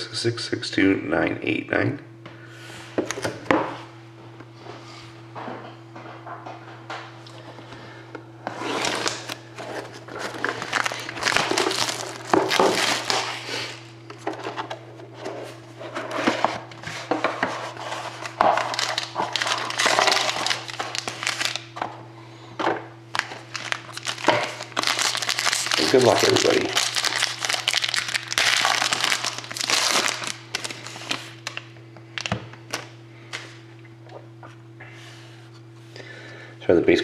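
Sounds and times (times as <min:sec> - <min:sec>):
plastic wrapping crinkling and tearing: 0:08.6 - 0:13.9, 0:17.8 - 0:21.8, 0:23.1 - 0:32.9.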